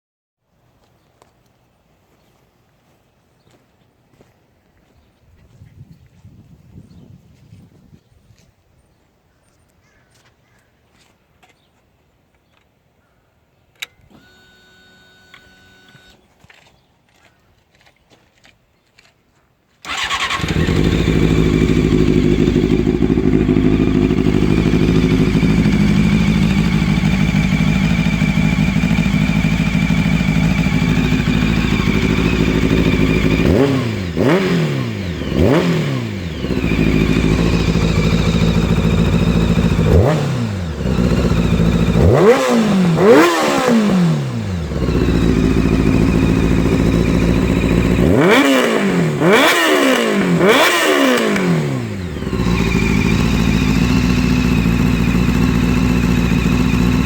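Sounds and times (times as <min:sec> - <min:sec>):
motorcycle engine idling and revving: 0:19.9 - 0:57.0.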